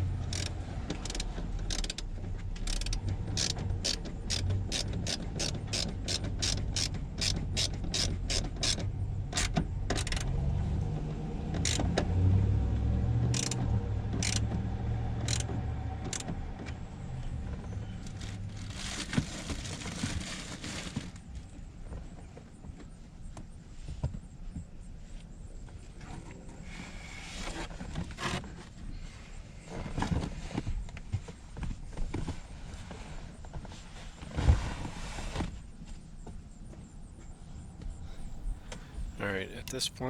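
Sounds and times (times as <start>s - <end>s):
hand ratchet clicking: 2.7s - 7.4s
low steady hum: 38.1s - 40.0s.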